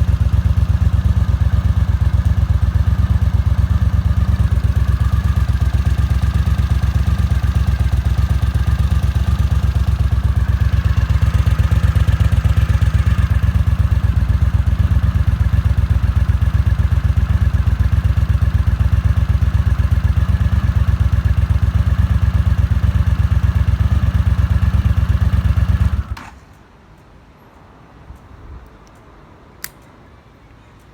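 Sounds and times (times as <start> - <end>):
motorcycle engine running: 0.0 - 26.2
light clicks: 26.4 - 30.0.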